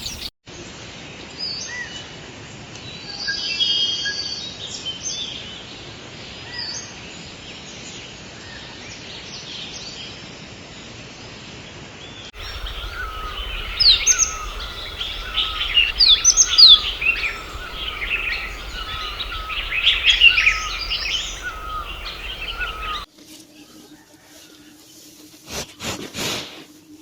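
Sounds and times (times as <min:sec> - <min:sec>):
chorus of birds calling: 0:00.0 - 0:00.3, 0:12.4 - 0:23.1
faint steady hum: 0:12.4 - 0:23.1.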